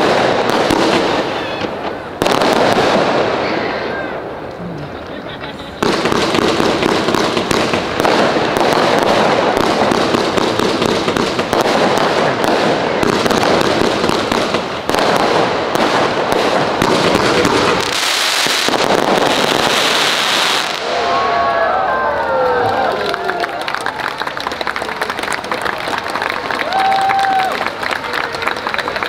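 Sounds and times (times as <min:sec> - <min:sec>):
fireworks hissing crackle: 0:00.0 - 0:21.2
fireworks bangs: 0:00.0 - 0:21.5.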